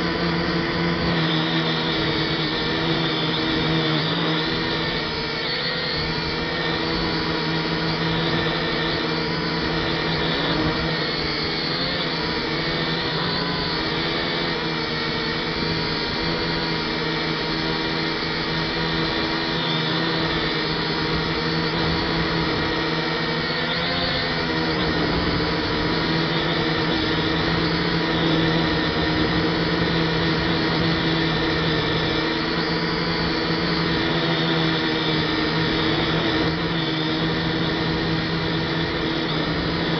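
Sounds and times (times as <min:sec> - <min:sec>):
quadcopter motors whining: 0:00.0 - 0:39.9.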